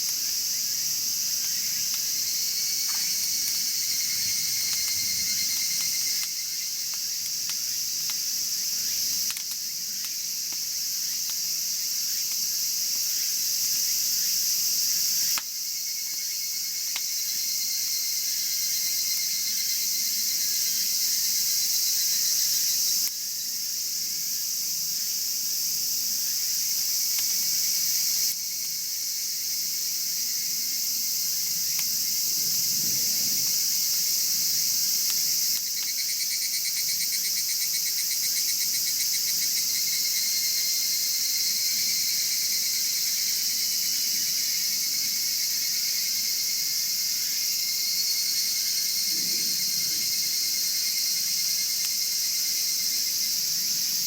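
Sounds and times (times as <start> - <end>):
fast pulsing insect trills: 0.0 - 9.2
insects trilling: 0.0 - 54.0.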